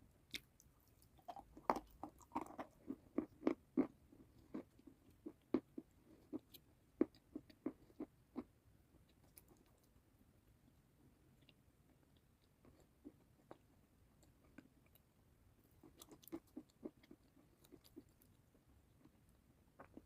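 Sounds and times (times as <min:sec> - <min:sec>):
crisp chewing crunches: 0:00.3 - 0:08.5.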